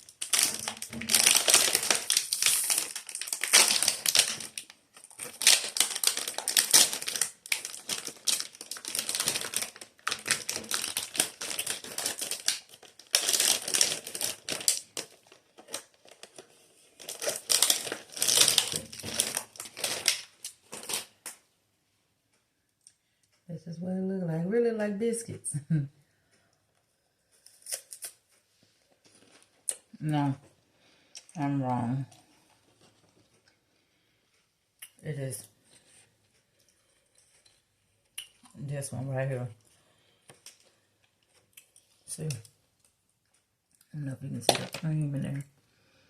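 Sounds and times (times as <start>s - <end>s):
plastic wrapper crinkling: 0.0s - 21.4s, 27.4s - 28.3s, 28.9s - 30.0s, 40.3s - 43.0s, 44.3s - 45.4s.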